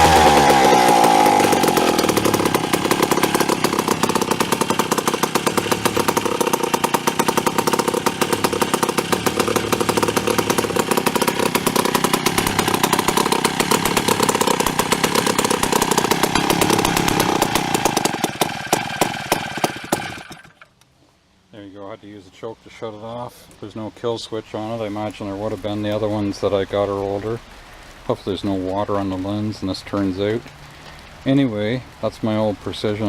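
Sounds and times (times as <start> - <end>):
chainsaw engine running: 0.0 - 20.6.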